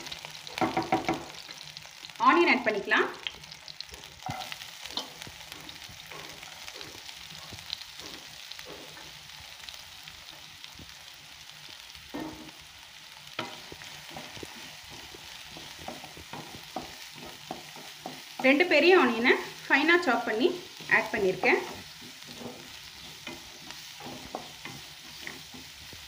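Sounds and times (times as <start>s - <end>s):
onion sizzling in oil: 0.0s - 26.0s
spatula scraping and tapping: 3.9s - 9.2s, 13.4s - 18.7s, 20.7s - 26.0s.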